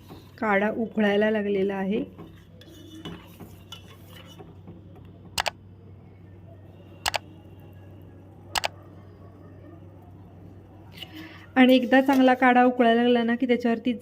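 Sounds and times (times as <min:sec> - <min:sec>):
pot boiling with low hum: 0:00.0 - 0:12.5.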